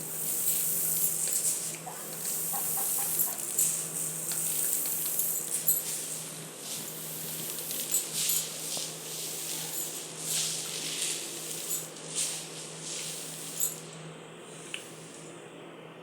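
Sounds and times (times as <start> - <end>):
steady low hum: 0.0 - 16.0
rice grains crunching when chewed: 6.7 - 13.5.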